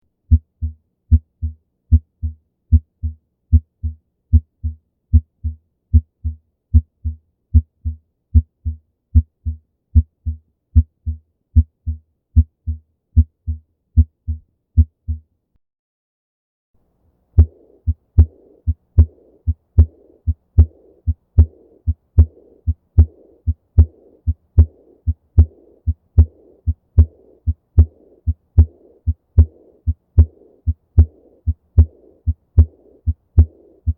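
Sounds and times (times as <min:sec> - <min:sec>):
heartbeat lub-dub: 0:00.3 - 0:15.3, 0:17.4 - 0:33.9
soft blowing heart murmur: 0:17.4 - 0:33.9.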